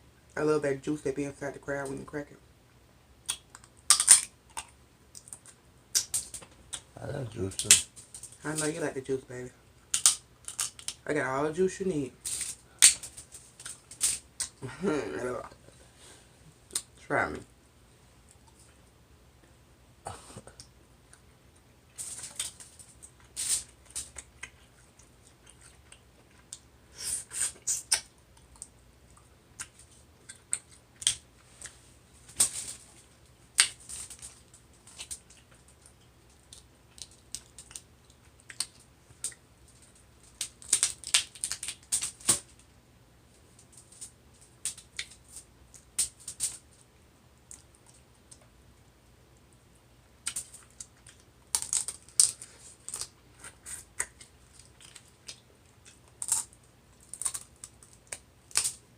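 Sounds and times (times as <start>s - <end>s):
crab shells cracking: 3.3s - 6.8s, 9.9s - 11.0s, 12.2s - 14.6s, 40.2s - 42.4s, 50.2s - 53.1s, 53.9s - 58.8s.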